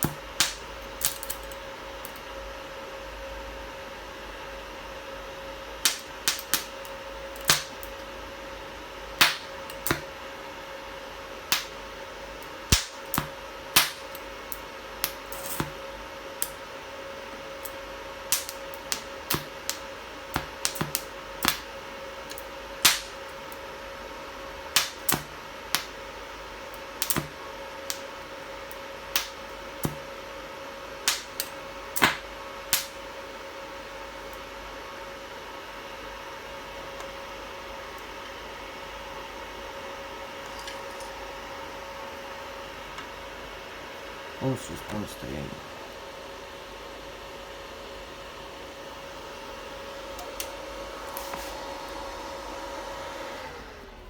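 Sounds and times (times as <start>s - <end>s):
welding arc snaps: 0.0s - 2.3s, 5.8s - 8.1s, 9.2s - 10.2s, 11.5s - 15.8s, 16.4s - 16.7s, 17.6s - 23.6s, 24.7s - 26.0s, 26.7s - 30.1s, 31.0s - 33.1s
welding machine hum: 0.0s - 2.5s, 5.0s - 34.5s, 48.1s - 52.5s.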